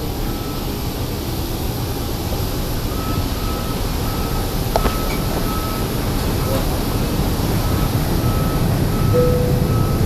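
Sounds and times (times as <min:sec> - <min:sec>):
airliner low rumble: 0:00.0 - 0:10.0
faint whine: 0:02.9 - 0:10.0.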